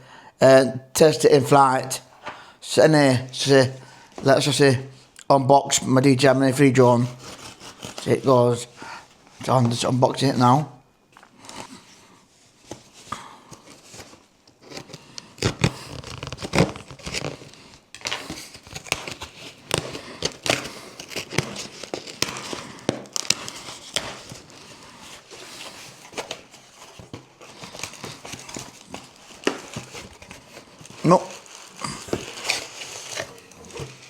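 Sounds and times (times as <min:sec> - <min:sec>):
packaging crinkling and tearing: 0:07.1 - 0:08.3, 0:12.7 - 0:34.0.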